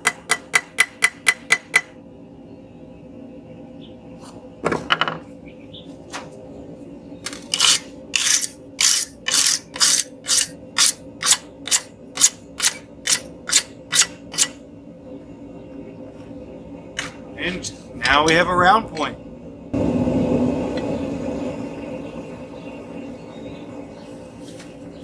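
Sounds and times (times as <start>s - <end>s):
hammer striking steel on anvil: 0.0s - 1.9s, 7.6s - 14.6s.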